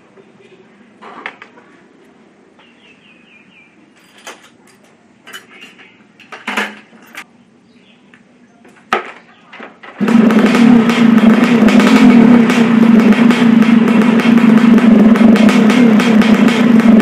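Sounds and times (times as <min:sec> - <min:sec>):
loud steady sound: 0:10.0 - 0:17.0.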